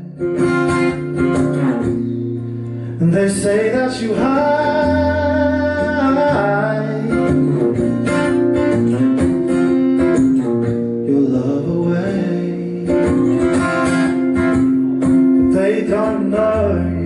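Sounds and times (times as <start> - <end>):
acoustic guitar strumming: 0.0 - 17.0
person singing: 2.9 - 8.0, 11.0 - 14.4, 15.0 - 17.0.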